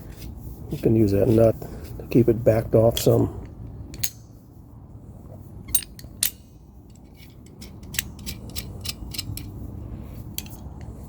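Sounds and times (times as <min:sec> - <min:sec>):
locking pliers clicking: 0:03.9 - 0:04.2, 0:05.7 - 0:09.6, 0:10.4 - 0:10.7.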